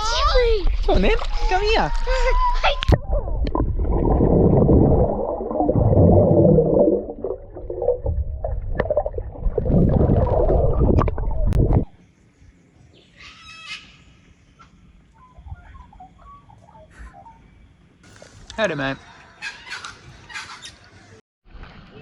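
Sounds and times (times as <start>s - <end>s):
water splashing in a pool: 2.8s - 12.0s.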